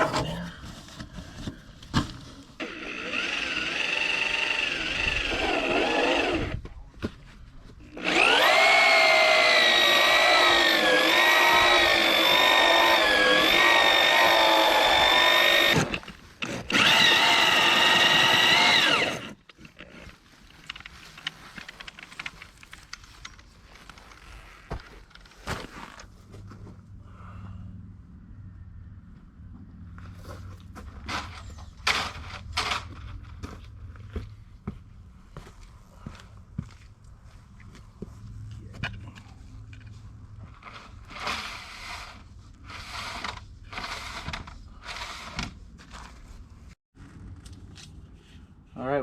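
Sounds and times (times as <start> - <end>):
power tool motor running: 2.6 - 6.5, 8.0 - 19.4.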